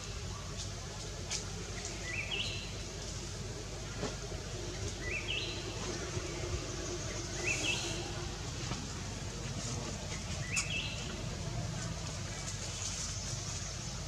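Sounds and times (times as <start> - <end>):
steady low rumble: 0.0 - 14.0.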